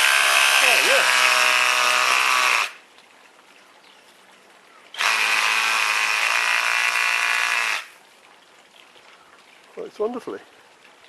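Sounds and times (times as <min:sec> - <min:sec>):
pressure washer motor whining: 0:00.0 - 0:02.8.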